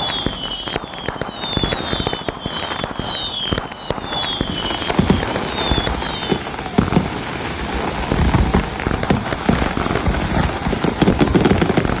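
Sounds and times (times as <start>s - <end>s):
whistles falling in pitch: 0.0s - 6.4s
fireworks popping and crackling: 0.0s - 12.0s.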